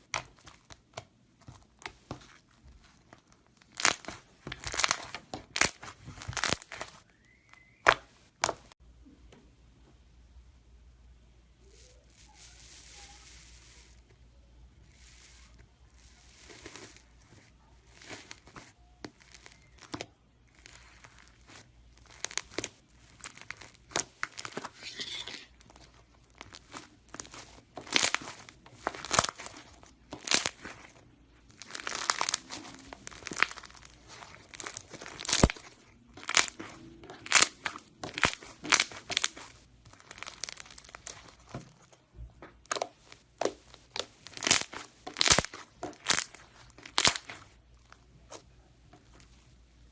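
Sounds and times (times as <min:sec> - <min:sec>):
crunchy slime squeezed by hand: 0:03.6 - 0:08.6, 0:17.8 - 0:41.7, 0:42.6 - 0:47.6.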